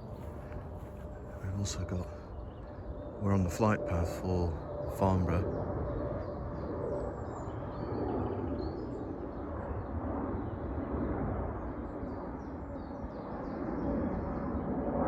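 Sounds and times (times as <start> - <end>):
small birds chirping: 0.0 - 10.0
aeroplane distant rumble: 0.0 - 15.0.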